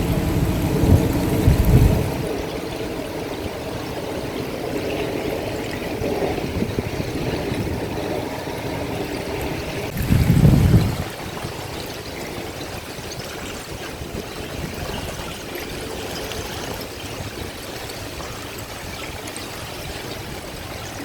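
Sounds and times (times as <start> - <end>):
low rumble: 0.0 - 2.3
river rushing with ice floes: 0.0 - 21.0.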